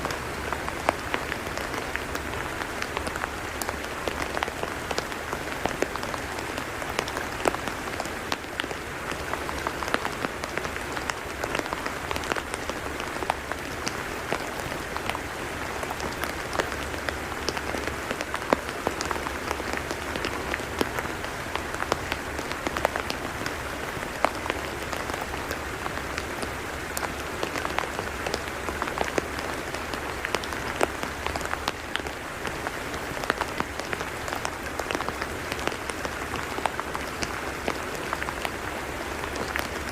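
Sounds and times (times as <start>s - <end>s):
rain pattering on mud: 0.0s - 39.9s.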